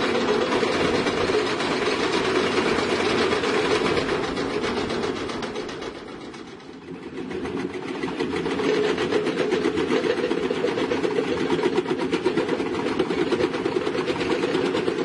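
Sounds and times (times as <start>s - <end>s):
diesel engine pulsing under load: 0.0s - 6.9s.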